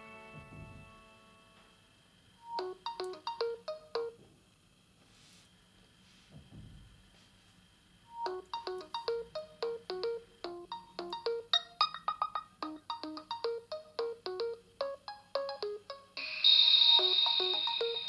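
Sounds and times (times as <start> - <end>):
smartphone ringtone melody: 2.4 - 4.2, 8.1 - 18.0.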